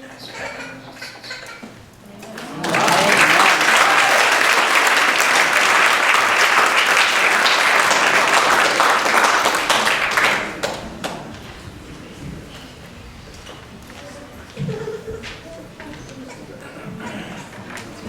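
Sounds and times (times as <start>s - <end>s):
audience applauding: 2.1s - 14.6s.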